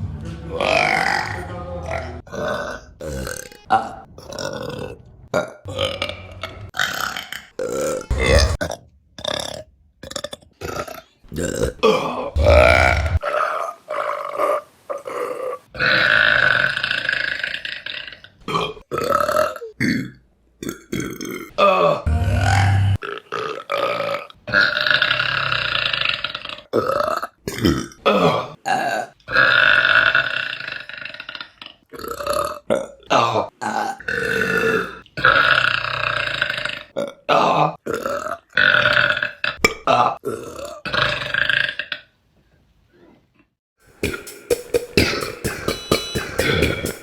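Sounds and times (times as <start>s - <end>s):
woman burping: 7.6s - 8.8s, 11.4s - 13.2s.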